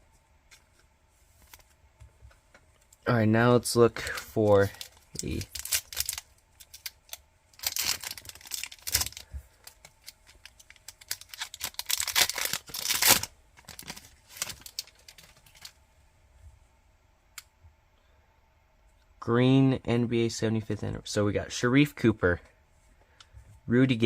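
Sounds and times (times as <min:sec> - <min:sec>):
wrapper tearing and crinkling: 0:04.0 - 0:15.8.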